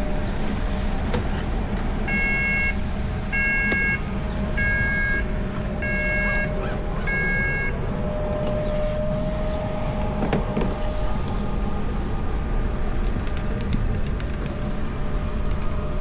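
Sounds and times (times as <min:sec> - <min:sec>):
road rumble: 0:00.0 - 0:16.0
vehicle engine: 0:00.0 - 0:16.0
electronic beeps: 0:02.1 - 0:04.0, 0:04.6 - 0:07.7.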